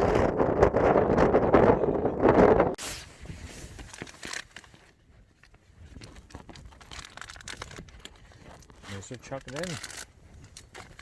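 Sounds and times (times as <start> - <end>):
food packet crinkling: 6.2 - 11.0.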